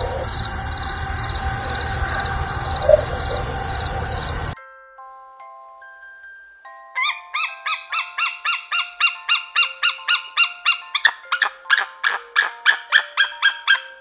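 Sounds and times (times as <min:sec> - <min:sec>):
bird calling rapidly: 0:00.0 - 0:04.6, 0:07.0 - 0:14.0
mallet percussion melody: 0:04.5 - 0:14.0.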